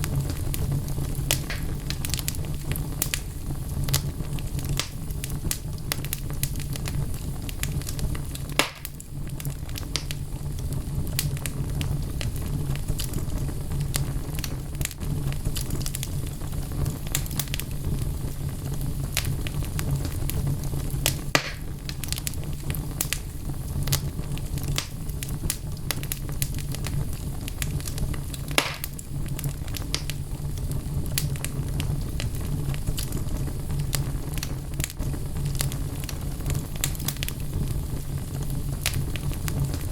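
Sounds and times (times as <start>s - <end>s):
wood fire crackling: 0.0s - 39.9s
logs popping: 1.3s - 3.2s, 8.5s - 9.0s, 21.0s - 22.2s, 28.5s - 29.0s.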